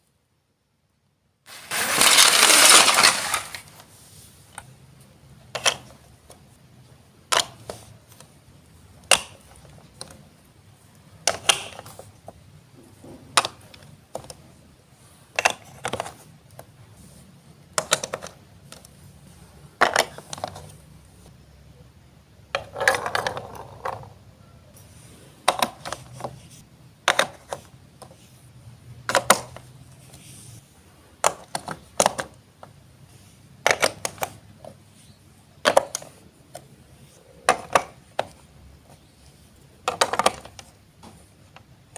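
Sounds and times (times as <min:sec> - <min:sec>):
plastic bricks rattling clatter: 0:01.5 - 0:03.7, 0:22.5 - 0:24.1
plastic bricks clicking together: 0:01.7 - 0:03.7, 0:07.3 - 0:07.8, 0:09.0 - 0:10.2, 0:11.2 - 0:12.0, 0:17.7 - 0:18.8, 0:29.0 - 0:29.6, 0:33.6 - 0:34.4, 0:35.6 - 0:36.6, 0:37.4 - 0:38.4, 0:39.8 - 0:40.7.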